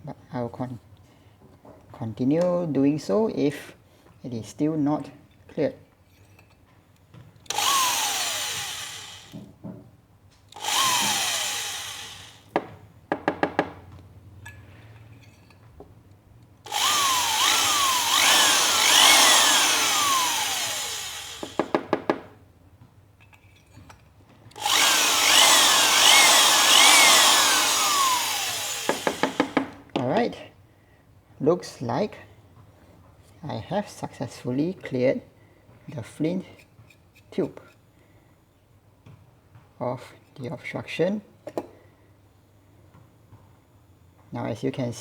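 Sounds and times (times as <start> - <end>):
hand drill whirring: 7.5 - 9.5, 10.5 - 12.5, 16.7 - 22.0, 24.5 - 29.8.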